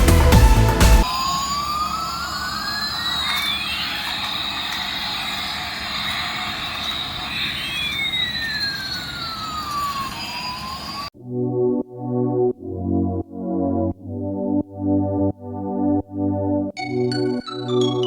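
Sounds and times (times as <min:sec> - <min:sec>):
jet engine hiss and whine: 0:01.0 - 0:11.1.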